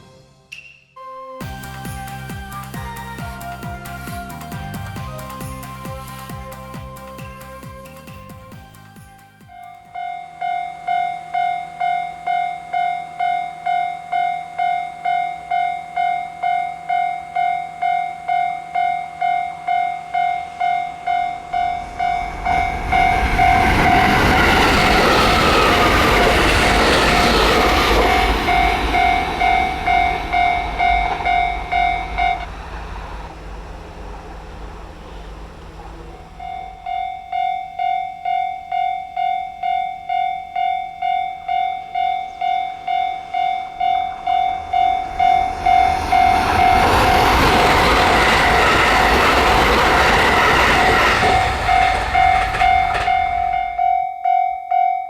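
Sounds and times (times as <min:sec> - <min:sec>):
train wheels rushing on rails: 0:01.4 - 0:54.1
level crossing bell dinging: 0:36.4 - 0:45.9, 0:51.9 - 0:55.0.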